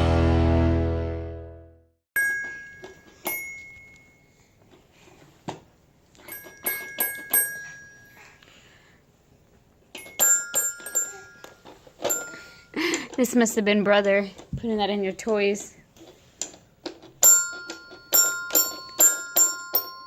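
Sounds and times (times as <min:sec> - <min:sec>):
toy chime ringing notes: 0:02.2 - 0:04.4, 0:06.2 - 0:08.3, 0:10.0 - 0:12.8, 0:17.2 - 0:20.0.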